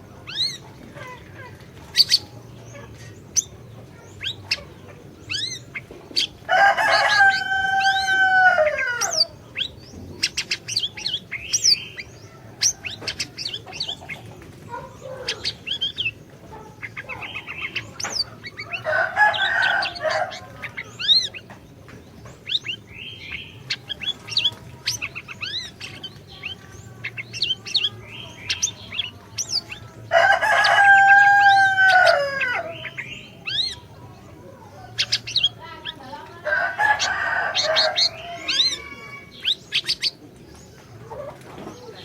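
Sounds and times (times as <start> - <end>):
songbird singing: 0.0 - 42.0
rooster crowing: 6.4 - 9.4, 18.7 - 20.8, 30.1 - 32.9, 36.4 - 39.4.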